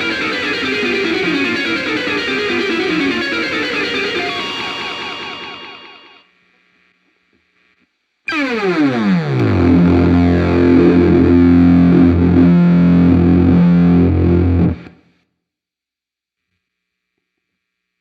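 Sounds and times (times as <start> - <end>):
distorted electric guitar: 0.0 - 6.3, 8.3 - 15.1.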